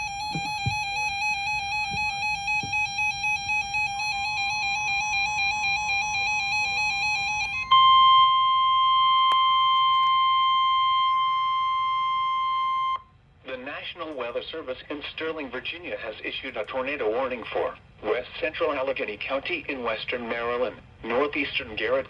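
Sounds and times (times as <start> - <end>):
steady warning alarm tone: 0.0 - 13.1
warbling emergency alert tone: 0.0 - 13.1.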